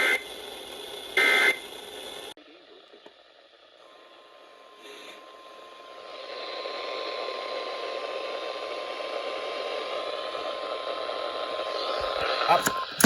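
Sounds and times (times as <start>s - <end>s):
radio static hiss: 0.0s - 3.1s, 11.5s - 13.0s.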